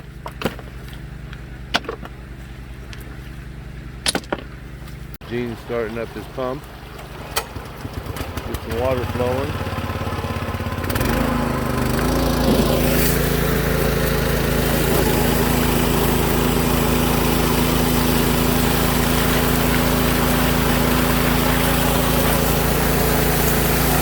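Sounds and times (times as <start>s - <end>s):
water pump engine revving: 5.2s - 24.0s
water rushing hiss: 12.4s - 24.0s.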